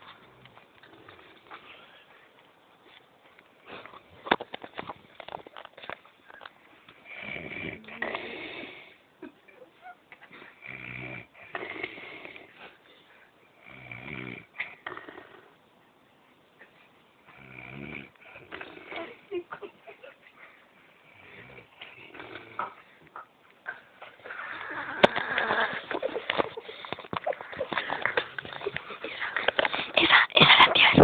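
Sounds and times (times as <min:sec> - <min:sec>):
person snoring: 0:07.1 - 0:08.9, 0:24.3 - 0:25.9.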